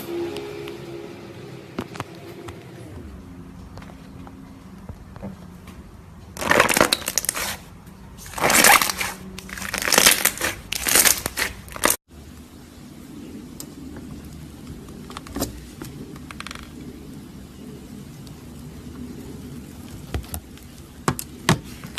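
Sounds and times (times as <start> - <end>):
slime crackling and popping: 6.4 - 7.6, 8.2 - 12.0.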